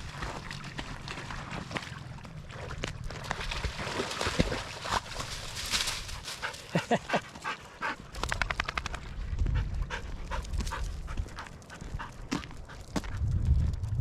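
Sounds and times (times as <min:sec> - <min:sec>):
dog panting: 0:06.2 - 0:08.8, 0:09.4 - 0:13.2
low rumbling: 0:09.0 - 0:14.0.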